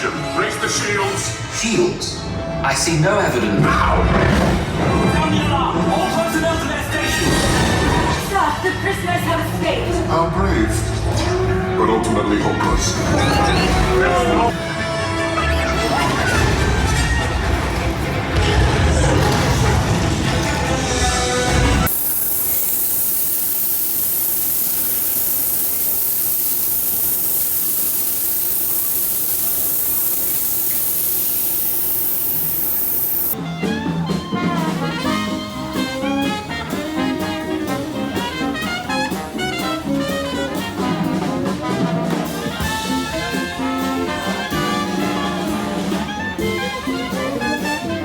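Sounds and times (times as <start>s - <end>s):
loud rushing hiss: 21.9s - 33.4s.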